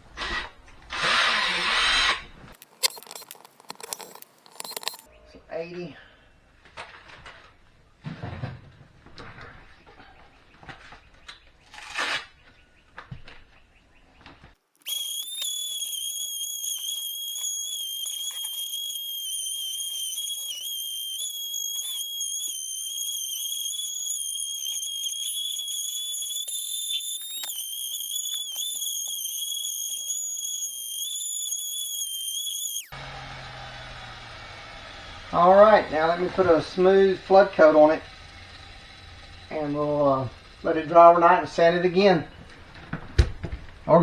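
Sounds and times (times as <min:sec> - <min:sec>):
power sander whining: 0:14.8 - 0:37.0.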